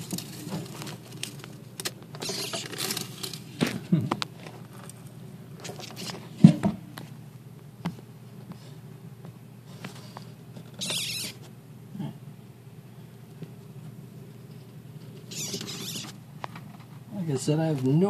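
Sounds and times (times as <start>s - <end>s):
lizard hissy distress scream: 10.8s - 11.4s, 15.3s - 16.1s.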